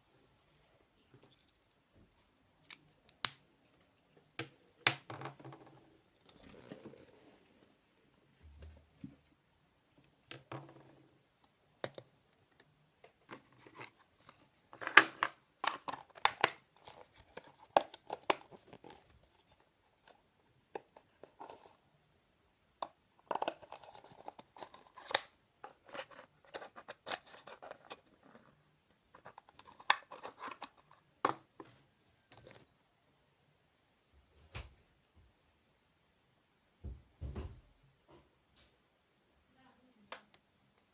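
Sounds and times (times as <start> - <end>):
toys and packaging handled: 2.6 - 7.5, 11.9 - 21.8, 22.8 - 28.5, 29.1 - 32.7.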